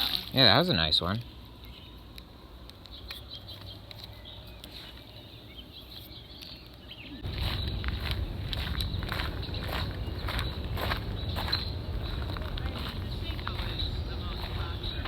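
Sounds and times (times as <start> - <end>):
low rumble: 7.2 - 15.0.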